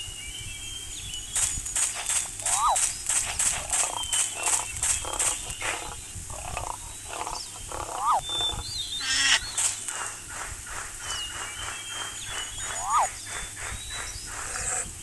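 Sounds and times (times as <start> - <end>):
rattling call: 1.8 - 15.0
wild animal calls: 2.4 - 2.9, 3.6 - 9.4, 12.6 - 13.2, 14.2 - 15.0.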